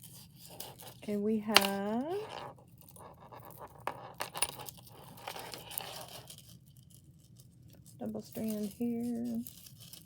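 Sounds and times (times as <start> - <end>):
necklace beads clinking: 0.5 - 6.6, 7.7 - 10.0
soft rustle: 2.0 - 10.0.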